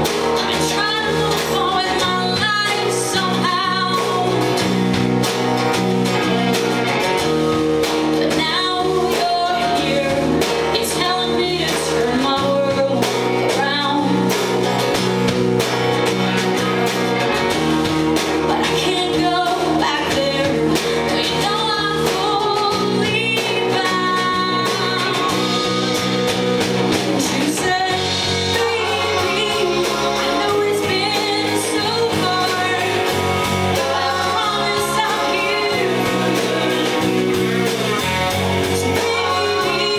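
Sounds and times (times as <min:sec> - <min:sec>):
drums: 0:00.0 - 0:39.9
electric guitars: 0:00.0 - 0:39.9
walking bass line: 0:00.0 - 0:39.9
woman singing: 0:00.1 - 0:04.8, 0:08.1 - 0:14.7, 0:18.4 - 0:39.9.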